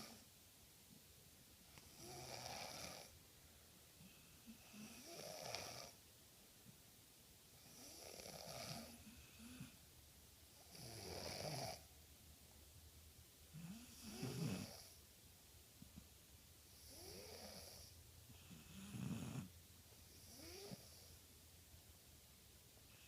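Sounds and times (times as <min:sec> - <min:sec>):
long snores: 0:00.0 - 0:00.3, 0:01.8 - 0:03.2, 0:04.0 - 0:06.0, 0:07.6 - 0:09.8, 0:10.6 - 0:11.9, 0:13.5 - 0:15.0, 0:16.7 - 0:19.5, 0:20.1 - 0:21.2.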